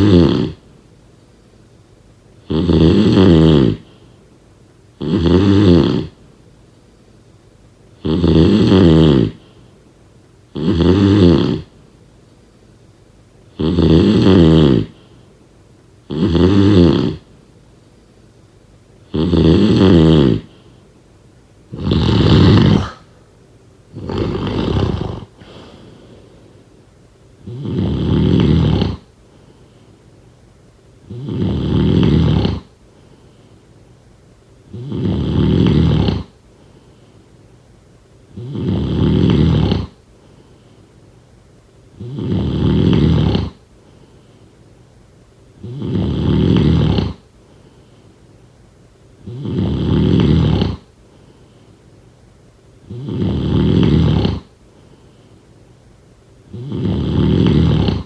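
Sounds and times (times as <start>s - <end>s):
person snoring: 0.0s - 0.6s, 2.5s - 3.8s, 5.0s - 6.2s, 8.0s - 9.4s, 10.6s - 11.7s, 13.6s - 15.0s, 16.1s - 17.2s, 19.1s - 20.5s, 21.7s - 23.2s, 24.0s - 26.2s, 27.4s - 29.1s, 31.1s - 32.7s, 34.7s - 36.3s, 38.4s - 40.0s, 42.0s - 43.6s, 45.6s - 47.2s, 49.2s - 50.9s, 52.9s - 54.5s, 56.5s - 58.0s
quiet breathing: 3.8s - 4.4s, 9.3s - 10.0s, 14.8s - 15.5s, 20.3s - 21.1s, 21.7s - 30.4s, 31.1s - 34.0s, 35.5s - 37.6s, 39.4s - 41.3s, 42.0s - 45.0s, 45.6s - 48.6s, 49.2s - 52.1s, 52.9s - 55.8s.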